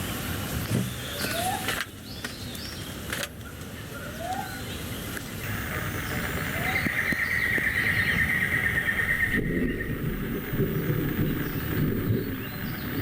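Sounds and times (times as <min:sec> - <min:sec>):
buzzing high drone: 0:05.4 - 0:13.0.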